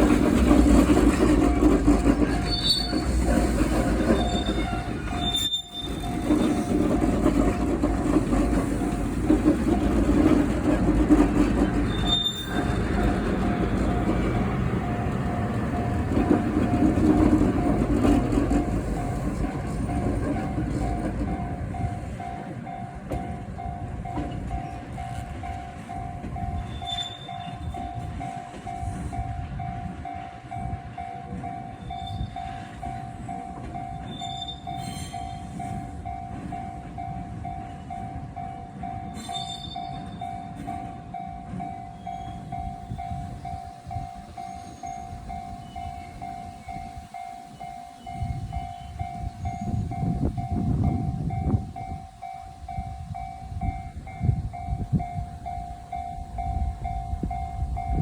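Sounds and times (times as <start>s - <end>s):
level-crossing warning bell: 0.0s - 58.0s
railway cars rumbling past: 0.0s - 58.0s
high wheel squeals: 2.2s - 6.8s, 11.6s - 14.4s, 26.5s - 27.9s, 34.0s - 35.6s, 39.1s - 40.4s, 42.0s - 50.5s.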